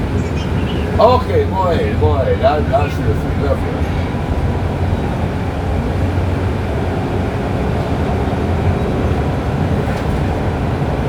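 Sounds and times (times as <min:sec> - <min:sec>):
subway train low rumble: 0:00.0 - 0:11.0.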